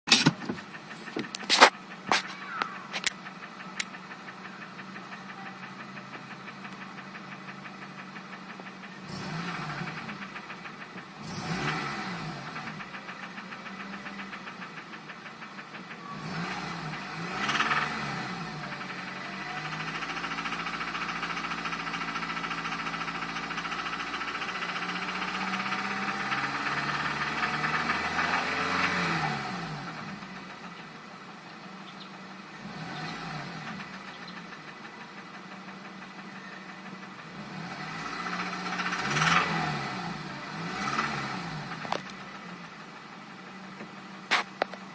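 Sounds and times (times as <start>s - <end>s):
car engine revving with knock: 0.0s - 30.9s, 31.9s - 44.9s.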